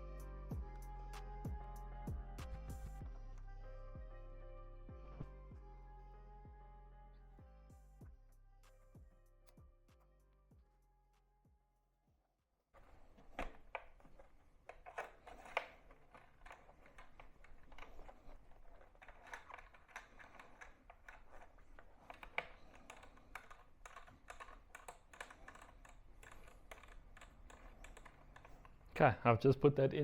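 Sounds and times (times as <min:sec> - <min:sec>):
hard parts tapping together: 0:12.8 - 0:29.0.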